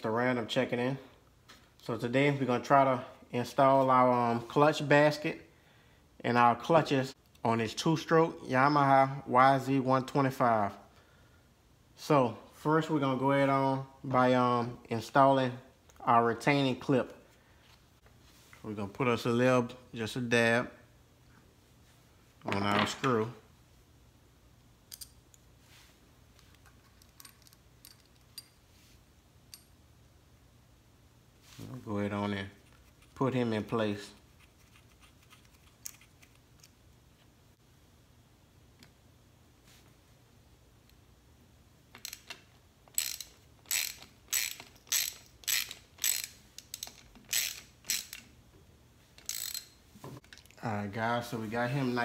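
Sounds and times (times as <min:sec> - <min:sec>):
metallic clicks of tools: 0:24.9 - 0:25.4, 0:26.4 - 0:28.6, 0:41.9 - 0:48.3, 0:49.2 - 0:50.6.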